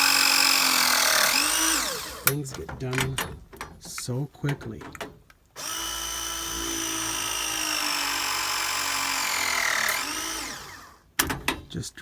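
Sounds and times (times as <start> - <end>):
press tool motor whine: 0.0 - 2.3, 5.6 - 11.0.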